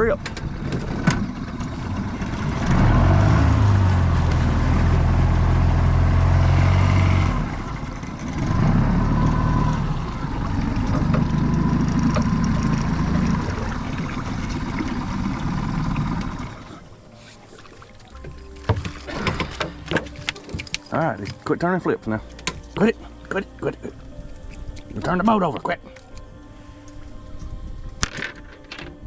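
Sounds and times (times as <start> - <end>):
outboard boat motor running: 0.0 - 23.0.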